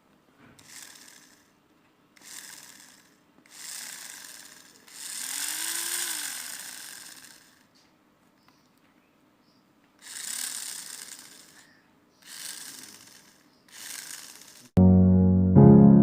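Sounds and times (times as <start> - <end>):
toy car motor whirring: 0.6 - 1.6, 2.2 - 7.8, 10.0 - 14.8.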